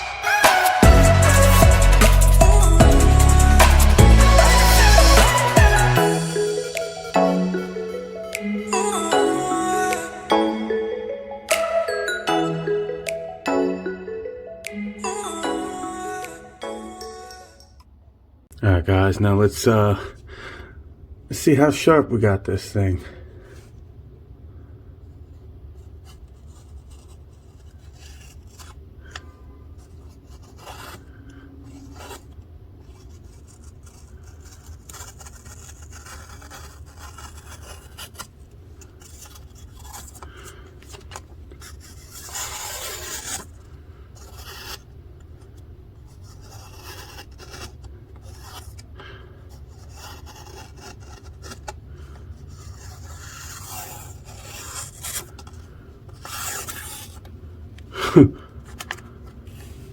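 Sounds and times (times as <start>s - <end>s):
knife slicing paper: 29.9s - 31.1s, 31.7s - 44.9s, 46.1s - 48.8s, 49.6s - 57.2s.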